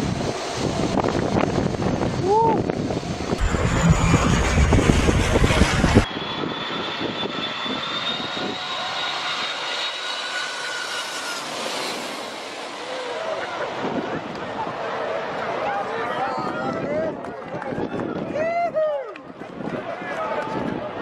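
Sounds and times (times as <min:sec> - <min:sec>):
airliner engines passing overhead: 0:00.0 - 0:18.6
thin steady high whine: 0:03.3 - 0:06.1.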